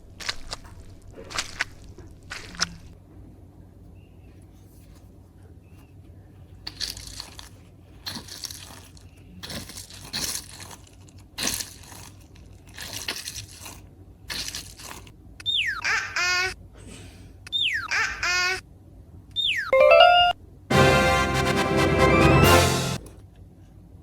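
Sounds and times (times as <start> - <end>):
slime squishing: 0.0 - 3.0, 6.5 - 15.1.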